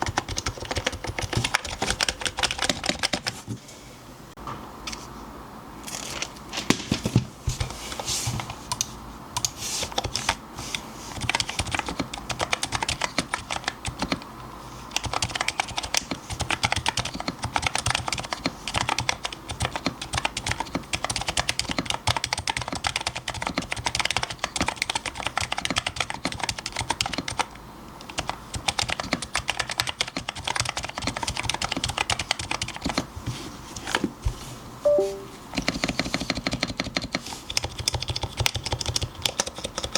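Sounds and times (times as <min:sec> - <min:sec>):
fast keyboard typing: 0:00.0 - 0:03.4, 0:08.4 - 0:10.4, 0:11.1 - 0:14.3, 0:14.9 - 0:33.1, 0:34.9 - 0:39.9.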